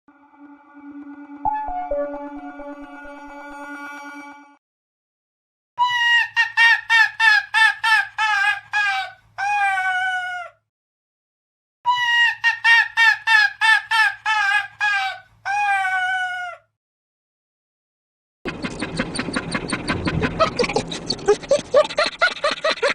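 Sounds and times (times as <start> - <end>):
dog-laugh sound effect: 18.5 - 22.9.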